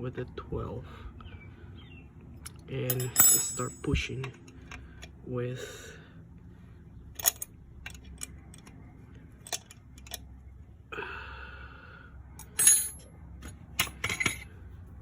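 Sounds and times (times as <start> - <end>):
metal clicks and clinks of tools: 2.4 - 5.1, 7.2 - 8.8, 12.4 - 14.5.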